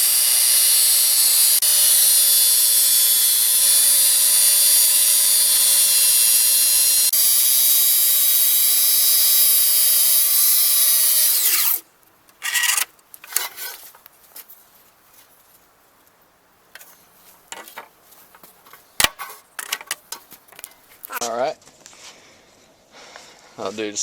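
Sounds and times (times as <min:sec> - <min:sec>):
track saw cutting wood: 0:00.0 - 0:11.8
knocks and handling clicks: 0:17.5 - 0:21.2.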